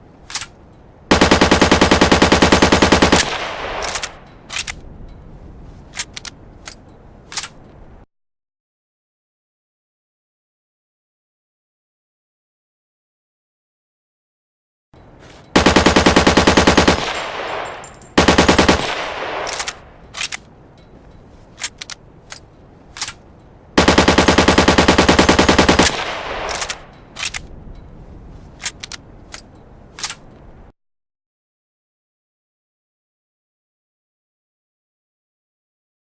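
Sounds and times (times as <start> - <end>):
automatic rifle bursts: 1.1 - 4.8, 15.6 - 20.4, 23.8 - 27.4
sharp clicks: 2.8 - 4.8, 5.9 - 7.8, 15.6 - 20.9, 21.6 - 23.2, 23.8 - 27.9, 28.6 - 30.5.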